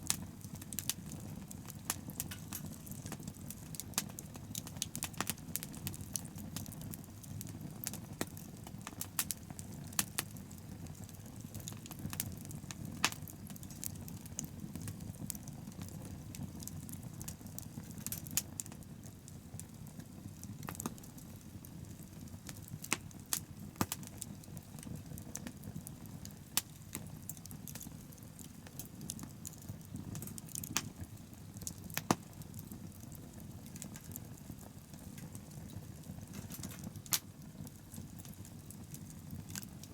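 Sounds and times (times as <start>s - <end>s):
bonfire crackling: 0.0s - 39.9s.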